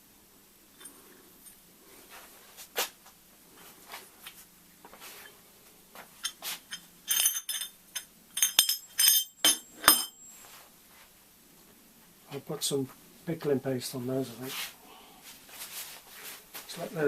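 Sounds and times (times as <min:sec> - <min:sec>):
metal fittings clinking: 0:06.2 - 0:10.2.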